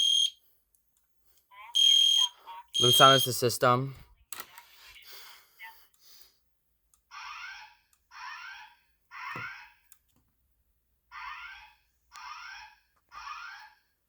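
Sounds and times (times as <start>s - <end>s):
fire alarm whoop signal: 0.0s - 0.4s, 1.8s - 3.3s.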